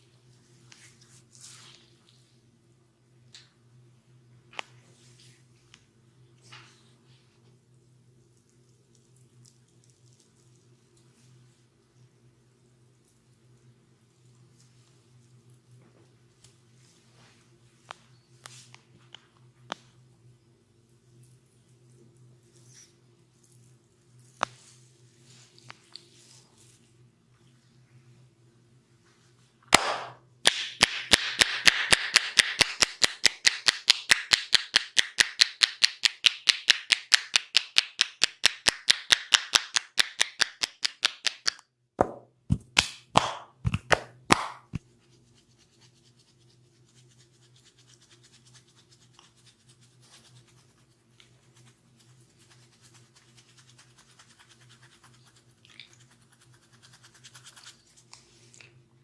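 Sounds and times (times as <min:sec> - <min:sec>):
hands slapping bare skin: 0:29.7 - 0:44.9.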